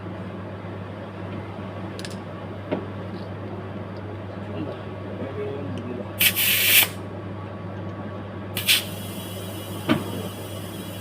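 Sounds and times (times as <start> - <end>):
compressed air hissing: 6.2 - 7.0, 8.6 - 11.0.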